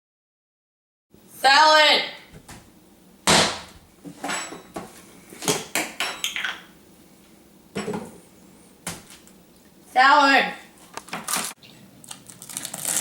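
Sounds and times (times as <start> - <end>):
dishes and utensils clattering: 4.1 - 6.7.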